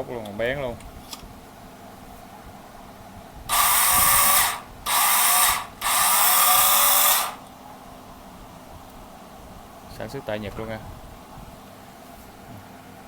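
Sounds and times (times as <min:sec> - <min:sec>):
battery-powered saw running: 0:03.5 - 0:07.4.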